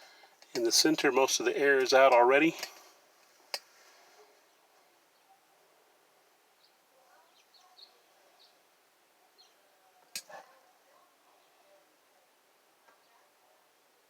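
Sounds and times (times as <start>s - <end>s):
faint background hiss: 0.0s - 14.0s
click: 10.1s - 10.3s.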